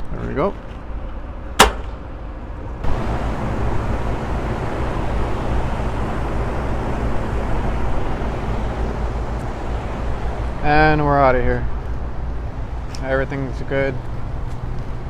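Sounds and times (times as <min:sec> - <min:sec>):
low hum: 0:01.0 - 0:15.0
condenser fan air rush: 0:01.4 - 0:15.0
sharp click: 0:01.6 - 0:02.0.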